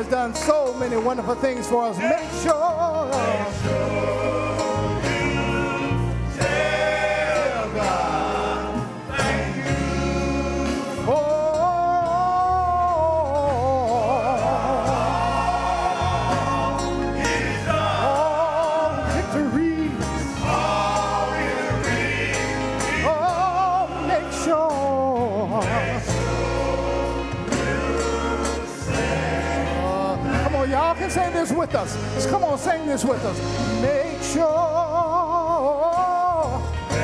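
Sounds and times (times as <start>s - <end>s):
gospel choir singing with band: 1.4s - 37.0s.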